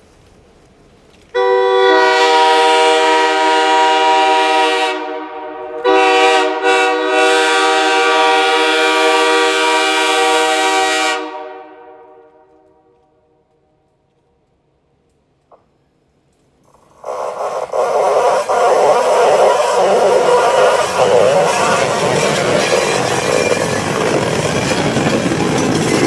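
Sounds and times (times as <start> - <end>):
steam locomotive whistle: 1.4 - 12.5, 16.8 - 25.1.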